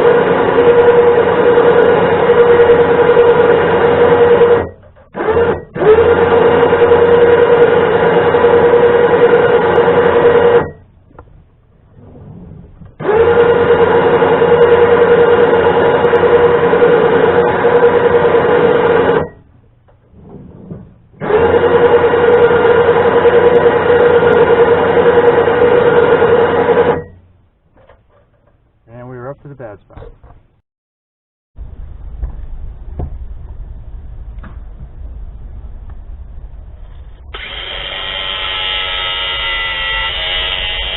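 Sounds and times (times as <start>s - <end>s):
electric winch motor whining: 0.0s - 11.0s, 11.9s - 19.5s, 20.2s - 27.3s, 37.2s - 40.9s.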